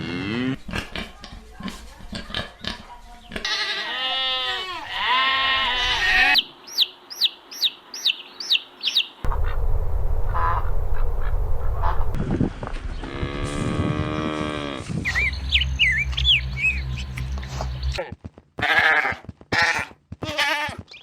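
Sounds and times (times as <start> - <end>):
goat bleating: 3.4 - 6.4, 18.6 - 21.0
faint calls: 8.9 - 12.2
low outdoor rumble: 9.2 - 12.6.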